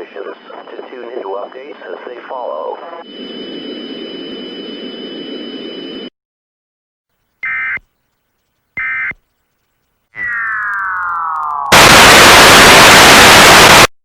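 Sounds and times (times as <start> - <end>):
warbling data bursts: 10.1 - 13.9
faint high whine: 10.2 - 13.9
static hiss: 11.7 - 13.9.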